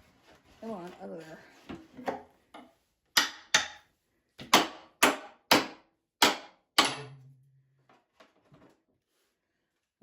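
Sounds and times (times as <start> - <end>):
hammer striking wooden box: 3.2 - 3.8, 4.4 - 7.2.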